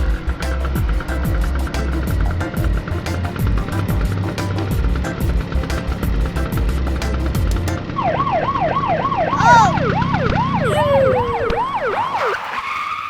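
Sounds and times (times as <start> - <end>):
background music with a beat: 0.0 - 7.8.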